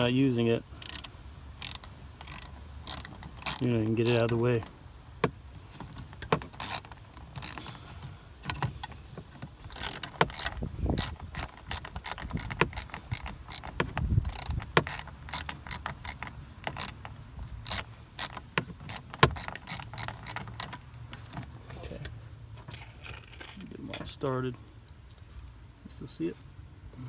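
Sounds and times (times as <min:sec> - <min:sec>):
dull thuds: 0:05.2 - 0:15.2.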